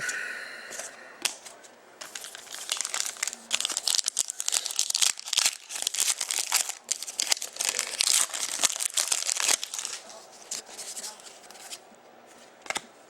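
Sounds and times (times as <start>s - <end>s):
wrapper tearing and crinkling: 2.0s - 11.2s.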